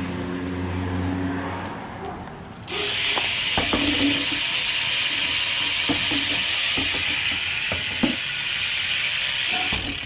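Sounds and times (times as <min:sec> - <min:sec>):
bicycle hub ratchet buzzing: 0:02.7 - 0:10.0.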